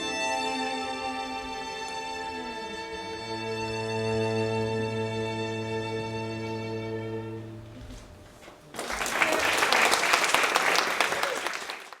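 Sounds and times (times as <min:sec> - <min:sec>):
string quartet holding a chord: 0:00.0 - 0:07.8
audience applause: 0:08.8 - 0:12.0.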